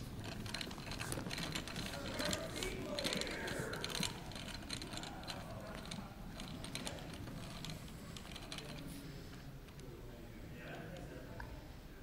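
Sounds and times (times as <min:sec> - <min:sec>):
small mechanism clicking and rattling: 0:00.0 - 0:09.0.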